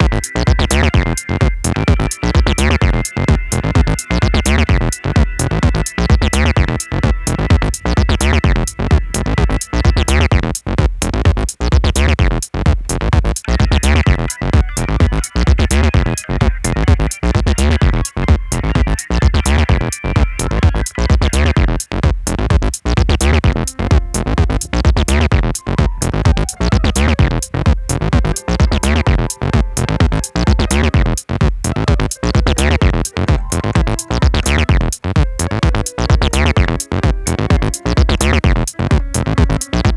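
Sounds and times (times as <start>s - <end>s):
organ: 0.0s - 10.4s, 13.5s - 21.8s, 23.5s - 39.9s
drum machine beat: 0.0s - 39.9s
synth bass: 0.0s - 39.9s
keyboard piano: 23.5s - 39.9s.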